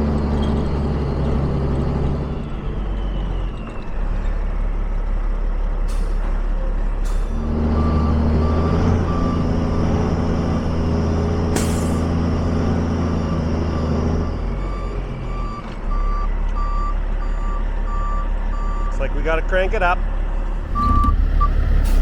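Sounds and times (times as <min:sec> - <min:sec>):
heavy vehicle engine running: 0:00.0 - 0:22.0
electronic beeping: 0:20.6 - 0:22.0.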